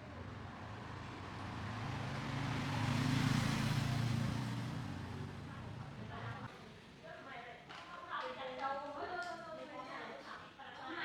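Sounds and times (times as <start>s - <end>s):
road vehicle passing by: 0.2s - 6.5s.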